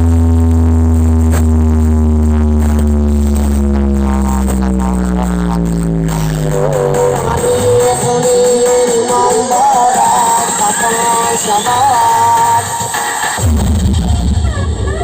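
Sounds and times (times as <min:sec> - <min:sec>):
deep electronic bass tone: 0:00.0 - 0:15.0
melodic music: 0:03.2 - 0:13.4.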